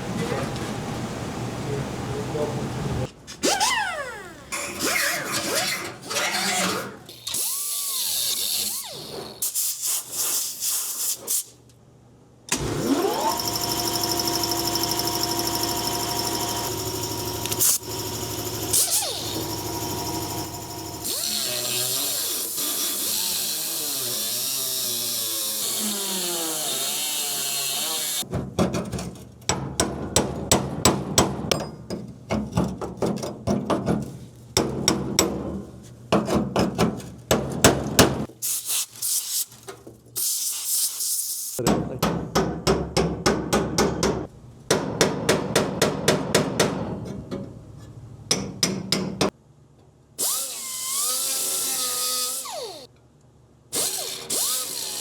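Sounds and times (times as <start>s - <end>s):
power tool whine: 12.6s - 28.2s, 50.2s - 52.9s, 53.8s - 55.0s
hammering on sheet steel: 41.7s - 47.0s.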